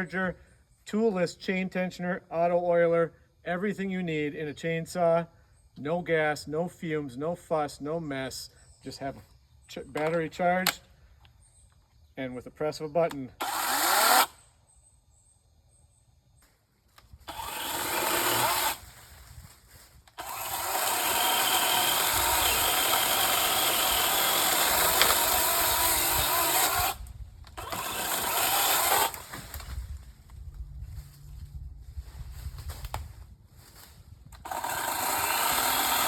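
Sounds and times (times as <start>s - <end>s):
electric chainsaw running: 13.4s - 14.4s, 17.2s - 18.9s, 20.2s - 29.3s, 34.4s - 36.0s.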